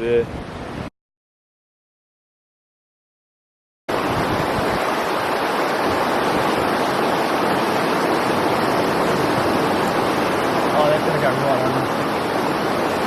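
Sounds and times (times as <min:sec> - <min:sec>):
fast-flowing river water: 0:03.9 - 0:13.0.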